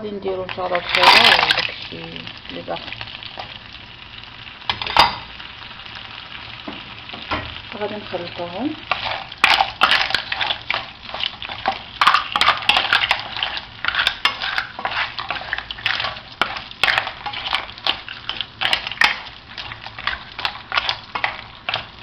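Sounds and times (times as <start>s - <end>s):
seafood sizzling in a frying pan: 0.1s - 22.0s
utensil scraping a pan: 8.9s - 22.0s.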